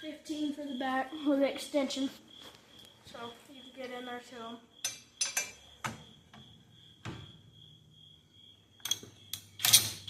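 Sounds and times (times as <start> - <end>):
metal hand tools clinking: 8.8 - 10.0.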